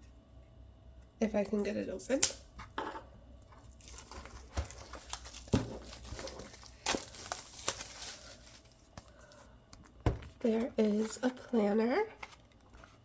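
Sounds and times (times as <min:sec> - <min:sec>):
packaging crinkling: 0:03.6 - 0:13.0.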